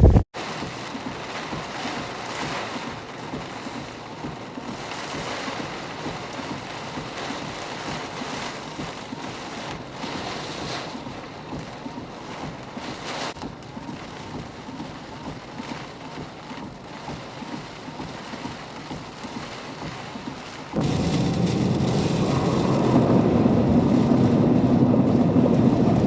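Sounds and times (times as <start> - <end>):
strong wind buffeting microphone: 0.0 - 0.3, 20.8 - 26.0.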